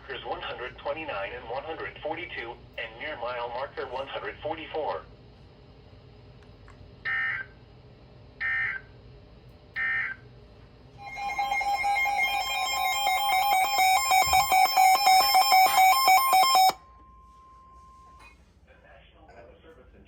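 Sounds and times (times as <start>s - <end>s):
digital data squawks: 11.0s - 16.8s
electronic alarm high tones: 11.0s - 18.2s.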